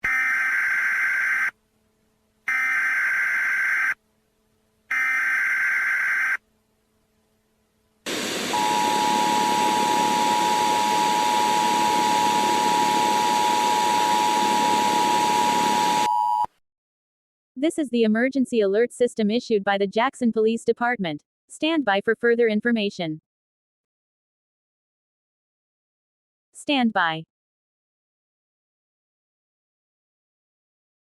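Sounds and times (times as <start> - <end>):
static hiss: 8.1 - 16.1
two-tone attention signal: 8.5 - 16.5.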